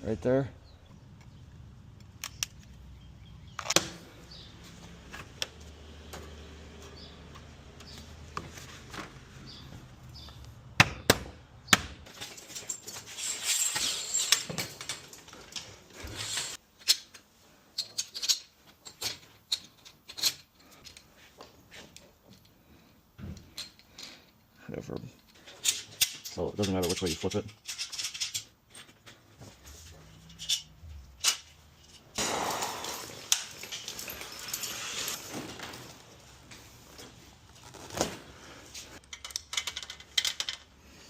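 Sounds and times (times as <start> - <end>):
hissing scraping: 16.0 - 16.6, 32.1 - 35.2.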